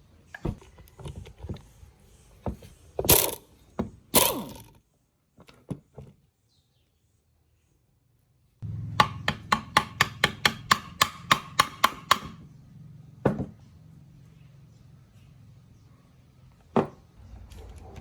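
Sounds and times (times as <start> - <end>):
hammer striking metal: 8.9 - 12.4.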